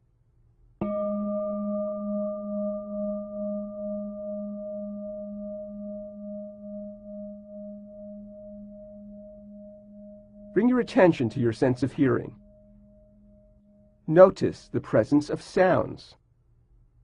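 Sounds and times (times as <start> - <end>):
singing bowl ringing: 0.8 - 14.6.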